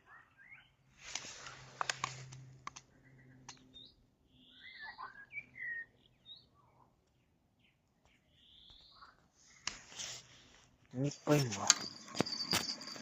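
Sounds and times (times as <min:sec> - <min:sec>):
faint bird calls: 0:02.9 - 0:10.4.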